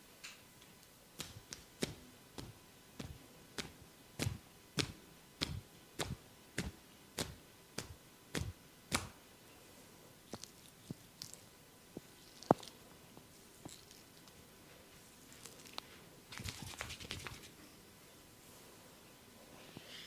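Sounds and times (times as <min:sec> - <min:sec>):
hands striking body: 0:01.2 - 0:09.2.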